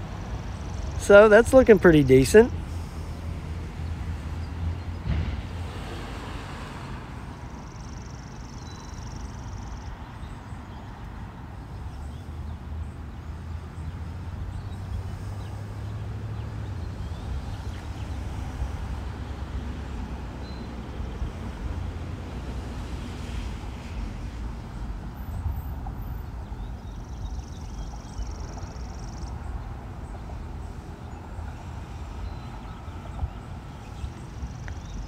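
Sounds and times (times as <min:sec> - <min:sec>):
wind rumble on microphone: 0:32.1 - 0:35.0.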